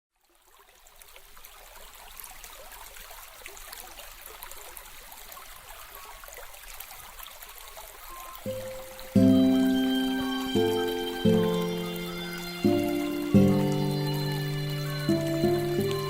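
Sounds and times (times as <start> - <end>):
water trickling and babbling: 0.1 - 16.0
low musical note: 8.5 - 16.0.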